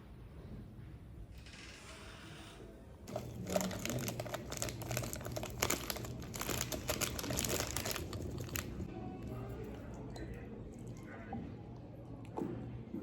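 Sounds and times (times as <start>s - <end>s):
plastic packaging crinkling: 3.1s - 8.9s.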